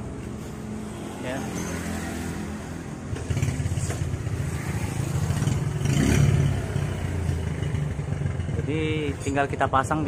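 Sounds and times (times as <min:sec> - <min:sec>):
motorcycle engine running: 0:03.1 - 0:10.0.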